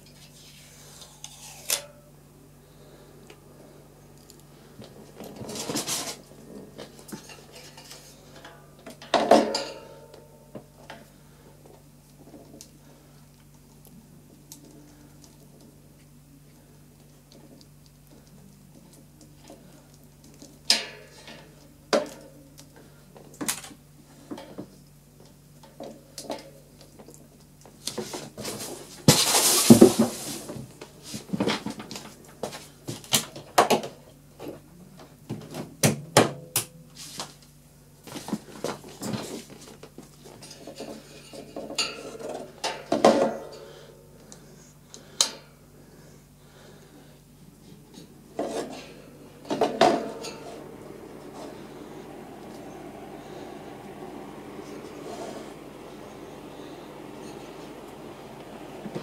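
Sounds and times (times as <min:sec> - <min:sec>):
faint steady low hum: 0:00.0 - 0:35.8, 0:36.4 - 0:59.0
rustling scrape: 0:00.1 - 0:01.8, 0:05.5 - 0:06.3, 0:28.0 - 0:31.4, 0:47.8 - 0:59.0.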